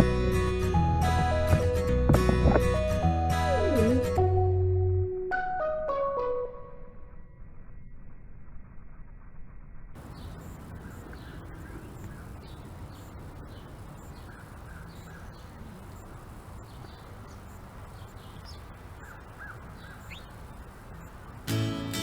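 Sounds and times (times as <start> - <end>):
birds calling: 10.0 - 21.5.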